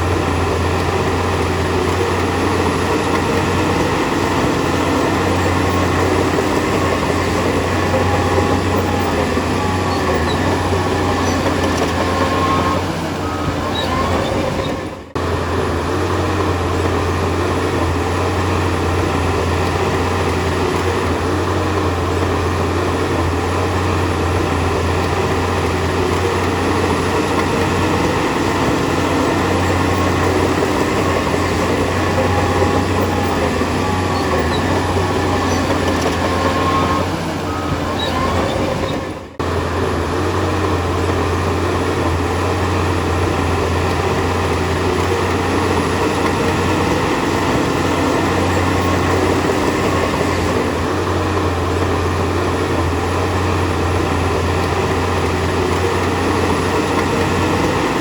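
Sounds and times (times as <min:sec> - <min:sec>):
heavy diesel machine rumbling: 0:00.0 - 0:58.0.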